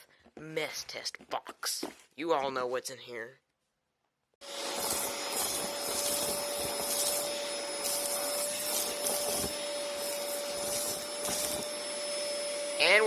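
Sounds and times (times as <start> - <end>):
vacuum cleaner running: 4.4 - 13.0
vacuum sucking up debris: 4.4 - 13.0.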